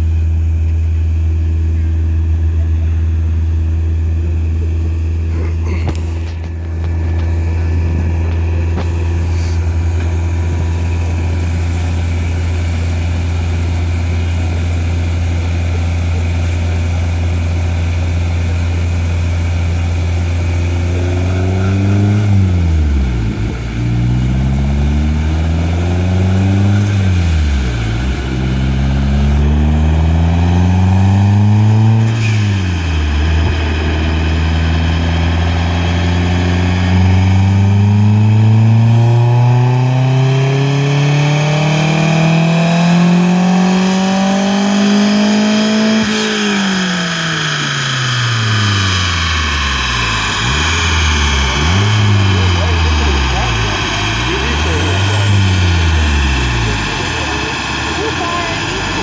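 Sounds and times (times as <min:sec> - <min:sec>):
car engine revving: 0:00.0 - 0:59.0.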